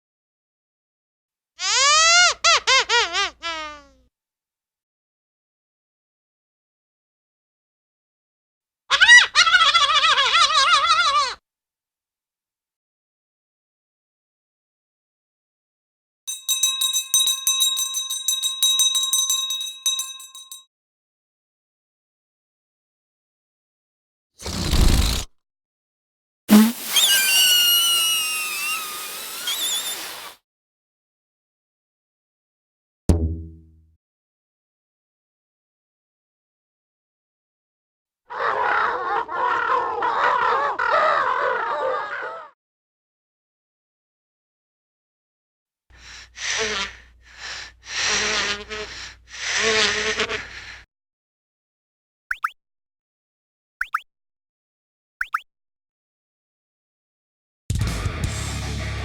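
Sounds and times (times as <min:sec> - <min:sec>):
small metal bell ringing rapidly: 0:16.3 - 0:20.6.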